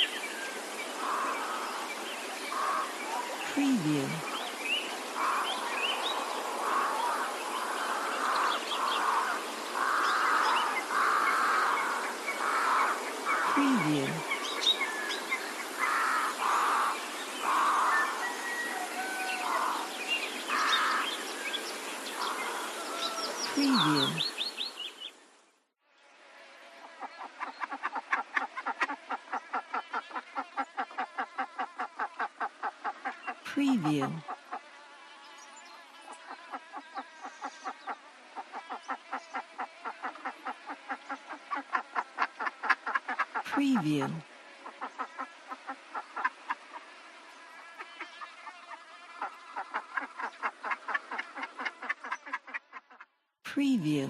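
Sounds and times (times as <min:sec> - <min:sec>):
small birds chirping: 0:00.0 - 0:25.3
insects buzzing: 0:00.0 - 0:25.4, 0:34.2 - 0:43.5, 0:44.1 - 0:52.4
rapid animal calls: 0:06.6 - 0:14.3.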